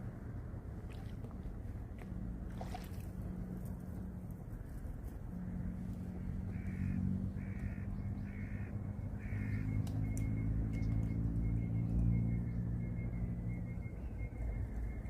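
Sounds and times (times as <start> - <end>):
steady low hum: 0.0 - 15.0
crow cawing: 6.5 - 9.8.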